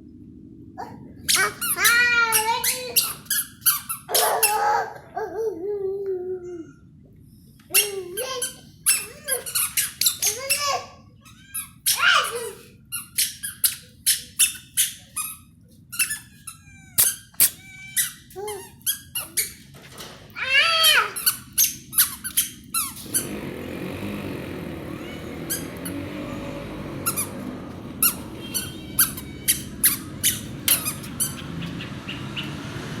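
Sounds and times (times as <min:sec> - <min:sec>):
kitten mewing: 0:23.0 - 0:31.1.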